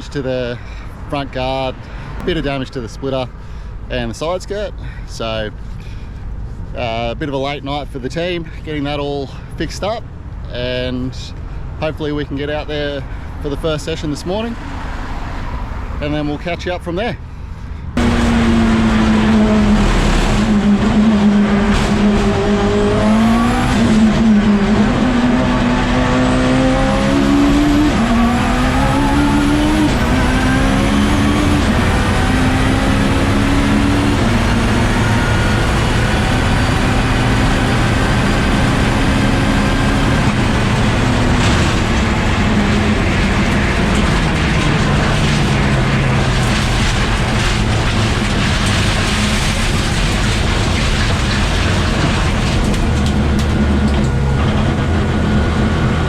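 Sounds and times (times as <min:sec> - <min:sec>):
steady mechanical noise: 0:17.8 - 0:56.0
race car engine at high revs: 0:18.0 - 0:56.0.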